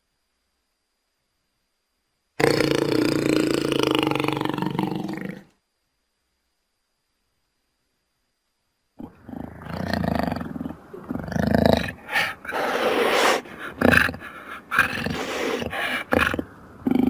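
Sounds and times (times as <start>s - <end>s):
jaguar growling and snarling: 2.4s - 5.5s, 9.0s - 17.0s.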